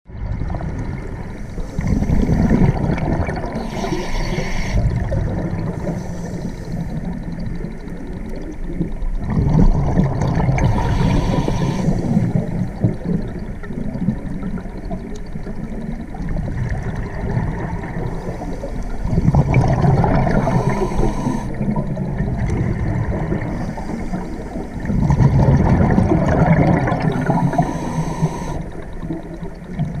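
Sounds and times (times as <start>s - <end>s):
diver breathing through regulator: 1.4s - 2.8s, 3.4s - 5.0s, 5.7s - 7.1s, 10.6s - 12.8s, 20.0s - 21.8s, 26.6s - 29.0s.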